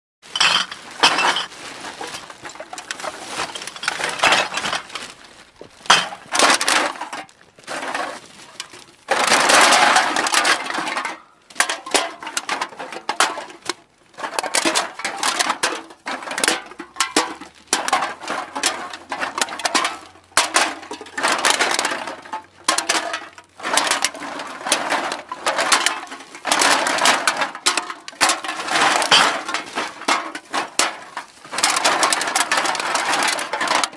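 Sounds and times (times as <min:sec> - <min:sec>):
cans clattering together: 0:00.3 - 0:04.9, 0:05.9 - 0:33.9
bag rustling: 0:00.3 - 0:09.0.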